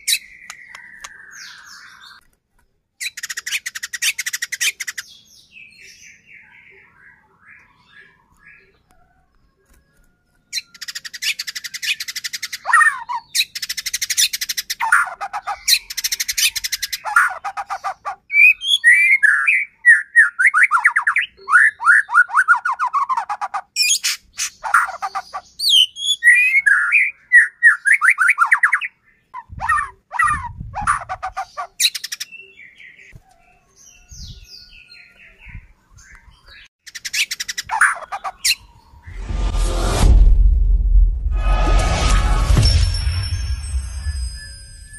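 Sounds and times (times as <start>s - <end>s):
songbird singing: 0.0s - 39.2s.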